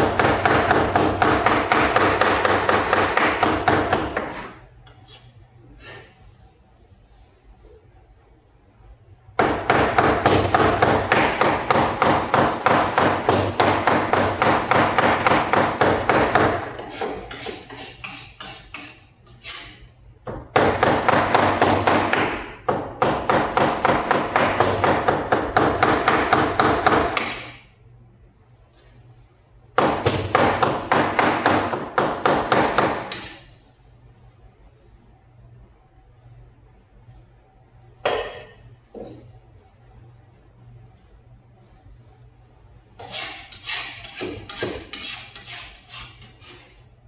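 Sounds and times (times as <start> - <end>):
knife chopping on chopping block: 0.0 - 4.5, 9.4 - 19.0.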